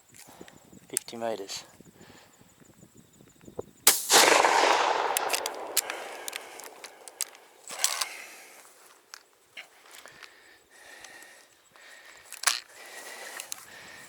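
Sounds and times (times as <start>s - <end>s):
shotgun shot: 3.9s - 7.5s
short sharp clicks: 3.9s - 8.1s.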